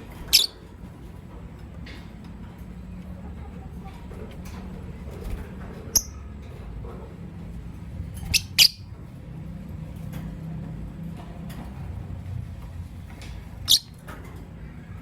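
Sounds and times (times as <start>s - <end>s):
lovebirds calling: 0.0s - 1.2s, 4.7s - 6.6s, 7.4s - 9.4s, 13.2s - 14.9s.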